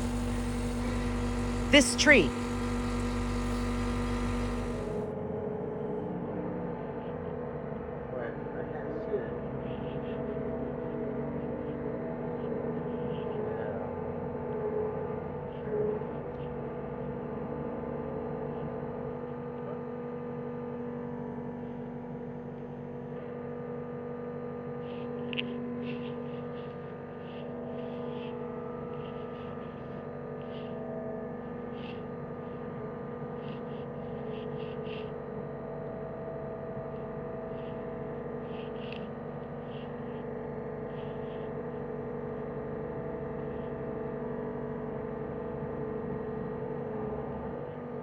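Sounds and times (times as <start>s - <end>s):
diesel engine running: 0.0s - 5.0s.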